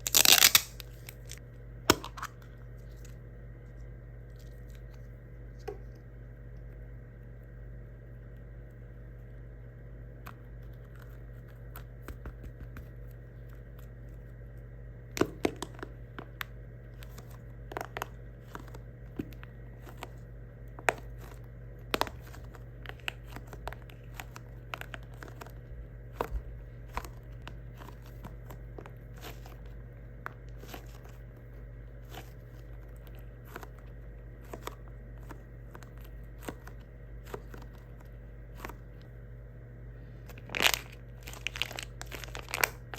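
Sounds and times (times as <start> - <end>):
plastic wrapping crinkling: 0.0 - 1.4, 40.3 - 42.9
steady low hum: 0.0 - 42.9.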